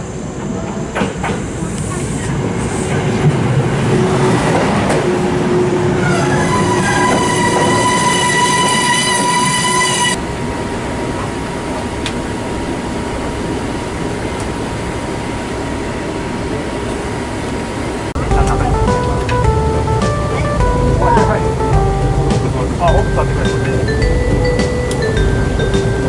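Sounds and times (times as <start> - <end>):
train running: 0.0 - 26.0
steady shrill squeal: 6.0 - 10.2.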